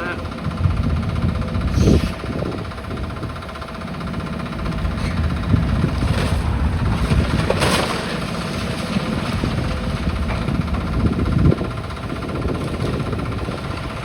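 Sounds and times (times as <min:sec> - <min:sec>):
diesel engine running: 0:00.0 - 0:14.0
debris crunching and clattering: 0:05.7 - 0:10.6.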